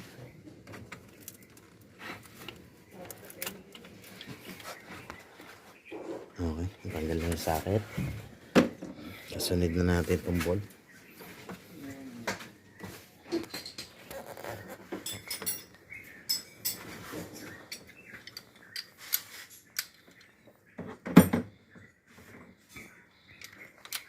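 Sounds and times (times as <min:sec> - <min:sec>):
metal tools clinking: 0:14.9 - 0:20.4.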